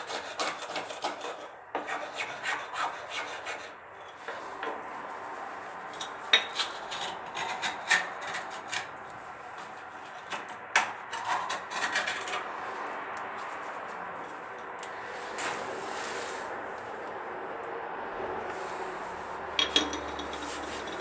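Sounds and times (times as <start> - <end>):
rubbing and scraping: 0.0 - 14.4, 18.6 - 21.0.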